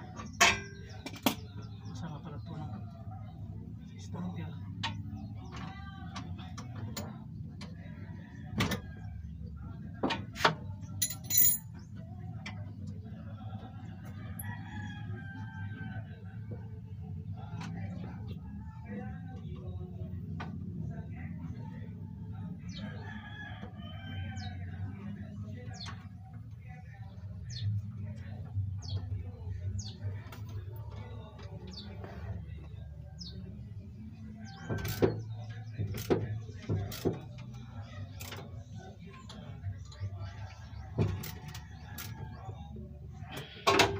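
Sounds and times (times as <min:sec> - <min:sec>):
wrench clinking on metal clamp: 0:11.0 - 0:11.7.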